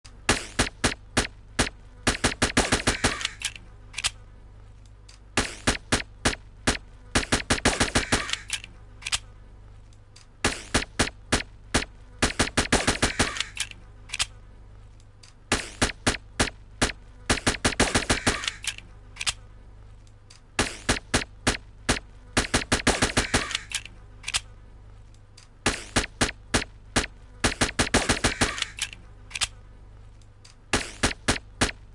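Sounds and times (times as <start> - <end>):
low steady hum: 0.0 - 31.9
suppressed pistol shots: 0.3 - 3.6, 5.4 - 8.6, 10.4 - 13.7, 25.6 - 28.9.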